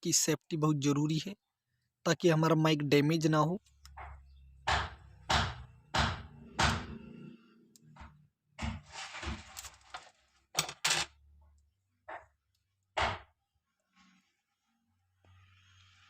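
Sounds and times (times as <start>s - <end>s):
tape rustle: 8.8s - 10.6s.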